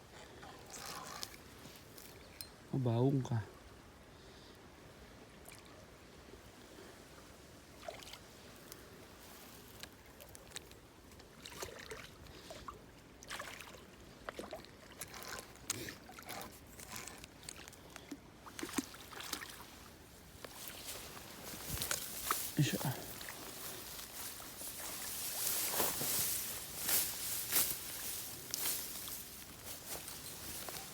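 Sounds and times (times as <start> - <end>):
small water splashes: 7.7 - 8.3, 9.9 - 16.4, 17.4 - 29.2.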